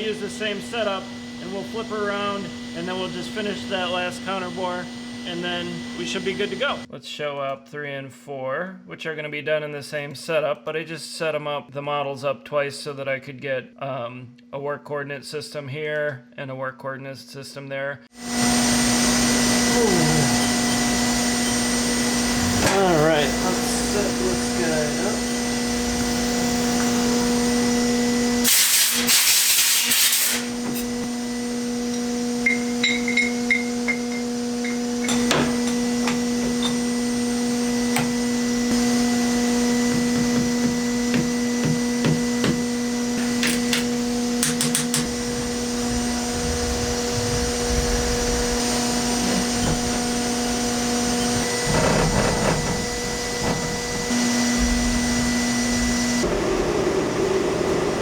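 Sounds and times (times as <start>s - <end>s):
machine hum: 0.0s - 6.9s, 18.2s - 58.0s
brief loud hiss: 28.5s - 30.5s.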